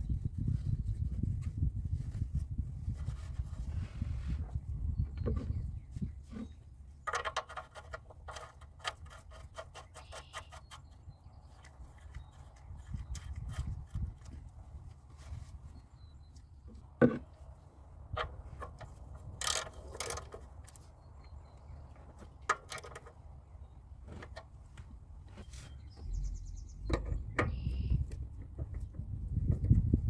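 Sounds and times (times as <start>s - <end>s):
tools and parts clicking and knocking: 7.0s - 10.9s, 18.1s - 21.4s, 22.2s - 23.3s.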